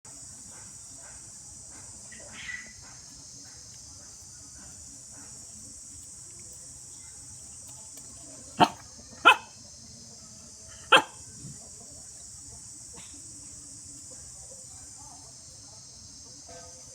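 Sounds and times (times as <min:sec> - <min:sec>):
dog yelping: 0:08.6 - 0:09.5, 0:10.9 - 0:11.2
dog barking: 0:08.6 - 0:09.6, 0:10.8 - 0:11.2.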